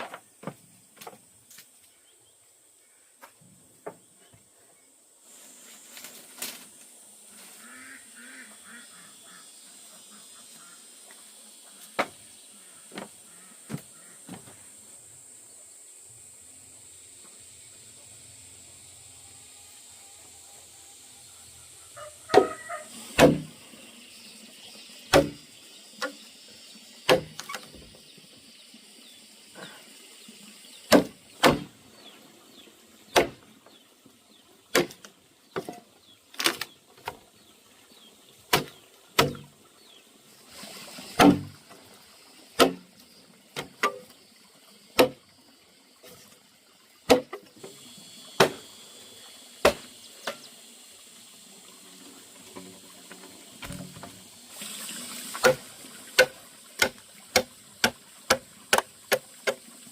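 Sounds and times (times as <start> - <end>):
faint steady hiss: 0.0 - 59.9
sharp knocks or chops: 23.2 - 23.5, 25.1 - 25.4, 30.9 - 31.7, 41.2 - 41.5.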